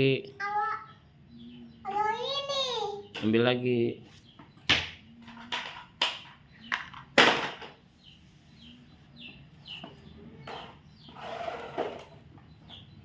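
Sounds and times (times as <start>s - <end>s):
small bird chirping: 0.0s - 13.0s
toys clacking and knocking: 4.7s - 7.8s.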